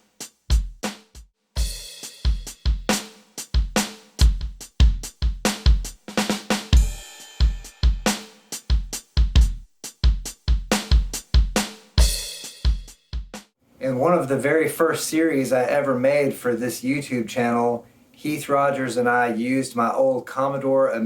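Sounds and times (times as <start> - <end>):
electronic drum beat: 0.0 - 13.5
snare drum: 0.0 - 13.5
hi-hat: 0.2 - 6.0, 6.6 - 13.5
kick drum: 0.5 - 0.9, 3.6 - 6.0, 6.8 - 8.1, 8.7 - 13.5
cymbal: 6.6 - 9.0.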